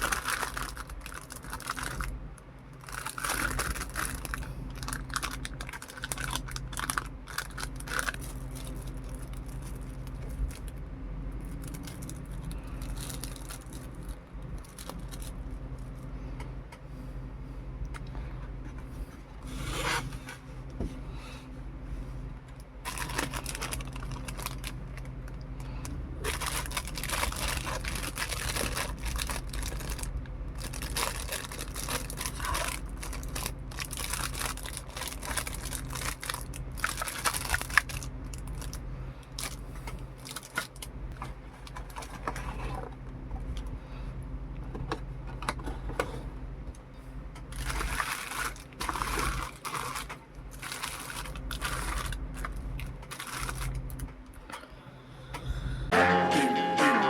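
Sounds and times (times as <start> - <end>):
plastic crinkling and rustling: 0.0 - 10.8, 11.4 - 16.1, 22.8 - 25.4, 26.2 - 42.9, 47.5 - 54.2
steady low hum: 0.0 - 57.0.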